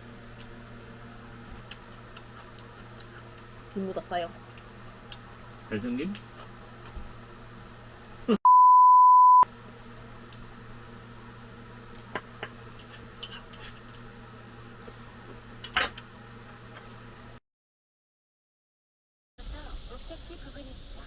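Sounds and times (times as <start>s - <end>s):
censor beep: 8.4s - 9.4s.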